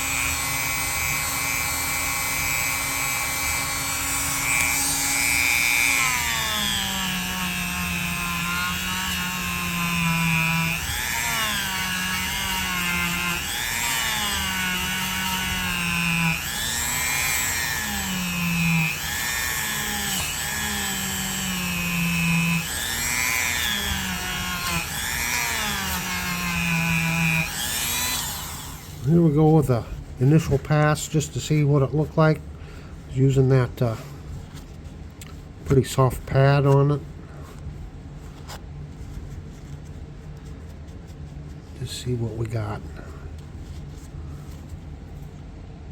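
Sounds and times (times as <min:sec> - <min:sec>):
rotary tool polishing metal: 0:00.0 - 0:29.6.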